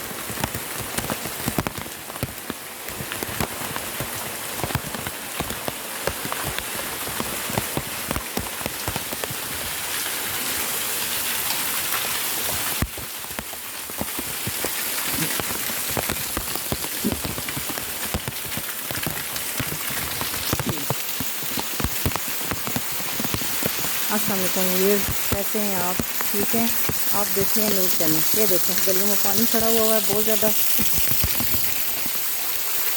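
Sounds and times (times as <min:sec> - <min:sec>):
heavy rain falling: 0:00.0 - 0:32.9.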